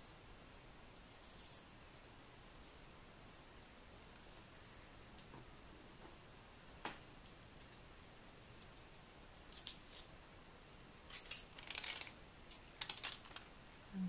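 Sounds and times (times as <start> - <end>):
crisp crackling: 11.1 - 13.5
foil and card rustling: 12.8 - 13.5.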